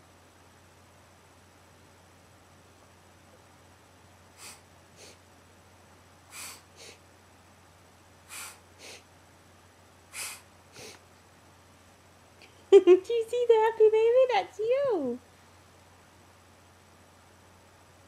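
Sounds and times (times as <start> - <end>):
baby making breathy huffs: 4.4 - 5.2, 6.3 - 7.0, 8.3 - 9.0, 10.1 - 11.0.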